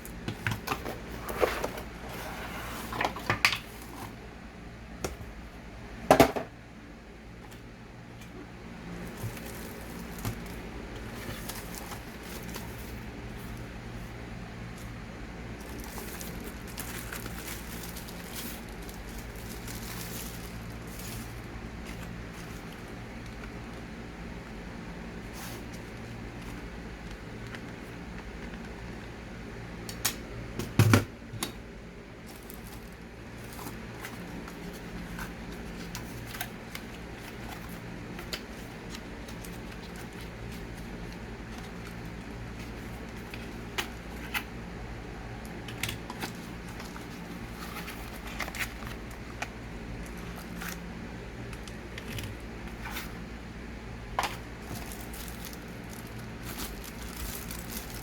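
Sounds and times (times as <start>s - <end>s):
packaging clicks and rustles: 0.0s - 2.1s, 8.9s - 13.8s, 14.7s - 24.6s, 32.2s - 44.6s, 45.4s - 53.3s, 54.1s - 58.0s
steady low hum: 0.0s - 58.0s.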